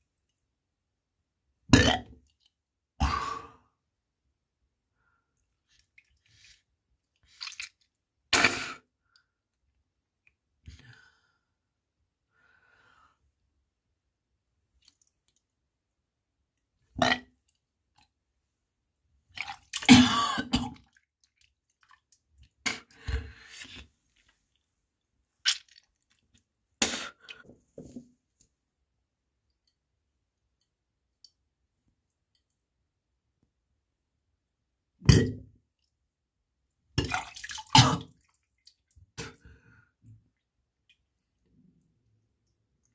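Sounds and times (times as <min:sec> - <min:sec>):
person gagging and retching: 0:01.7 - 0:02.3, 0:03.0 - 0:03.5, 0:07.3 - 0:08.8, 0:16.9 - 0:17.4, 0:19.4 - 0:21.0, 0:22.5 - 0:23.9, 0:25.4 - 0:25.9, 0:26.8 - 0:27.4, 0:35.0 - 0:35.5, 0:37.0 - 0:38.3.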